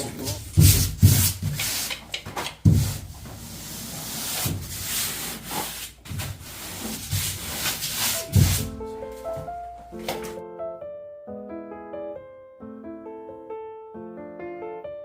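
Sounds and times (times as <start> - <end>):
rubbing and scraping on surface: 0.0 - 9.5.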